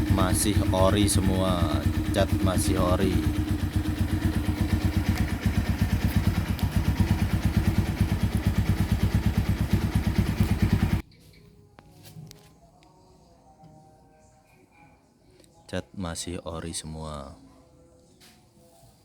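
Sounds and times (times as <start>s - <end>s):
motorcycle engine idling: 0.0s - 11.1s.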